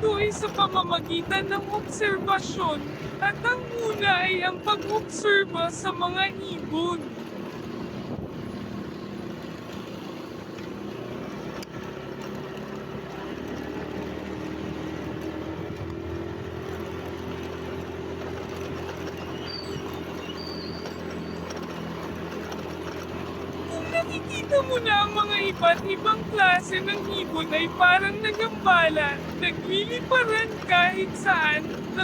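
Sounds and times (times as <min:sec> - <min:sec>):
engine droning: 0:00.0 - 0:32.0
faint high-pitched whistles: 0:19.2 - 0:21.5.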